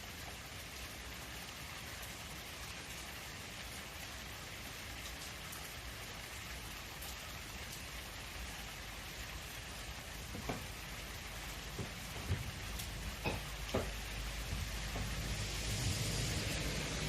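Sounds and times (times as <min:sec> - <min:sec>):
steady rain falling: 0:00.0 - 0:17.0
soft low knocks: 0:10.2 - 0:15.8.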